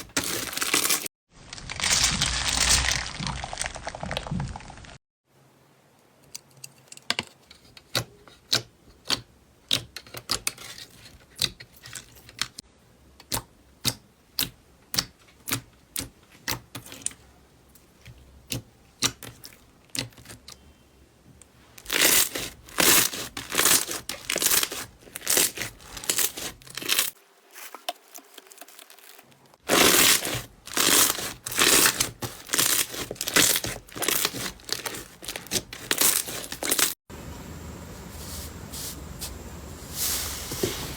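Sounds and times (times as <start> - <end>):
slime popping and squishing: 1.6 - 5.0.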